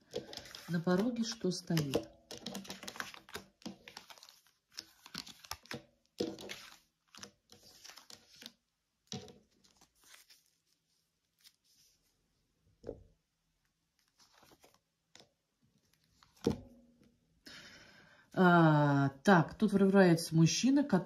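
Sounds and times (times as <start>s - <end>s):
cards rustling and tapping: 0.0s - 10.8s, 14.0s - 17.2s.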